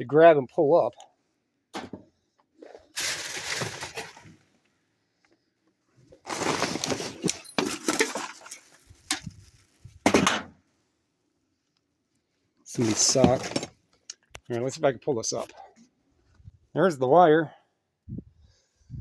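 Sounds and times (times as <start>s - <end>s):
scrap rustling and clattering: 3.0s - 4.4s, 6.2s - 10.0s, 12.8s - 13.8s.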